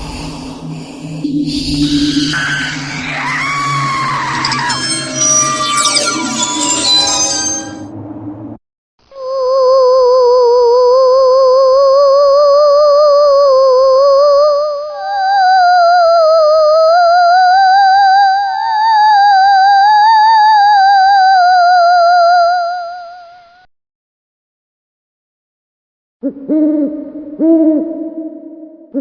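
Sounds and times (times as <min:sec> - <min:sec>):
faint thin high whine: 0:00.0 - 0:07.9
eerie wobbling theremin-like tone: 0:00.0 - 0:08.2.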